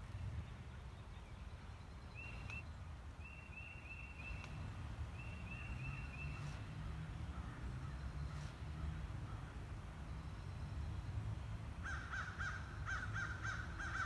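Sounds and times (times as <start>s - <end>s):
bird chirping: 0.4s - 8.5s.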